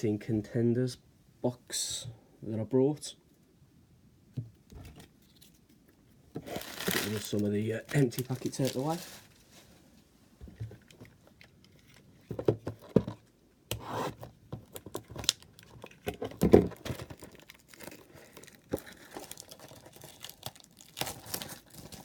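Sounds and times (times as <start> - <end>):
wrappers crinkling and tearing: 6.4 - 9.4, 16.8 - 22.0.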